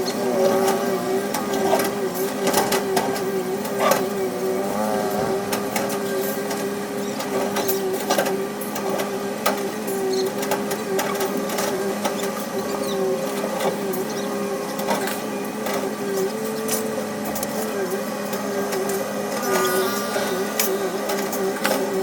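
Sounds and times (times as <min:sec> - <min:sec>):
excavator engine humming: 0:00.0 - 0:22.0.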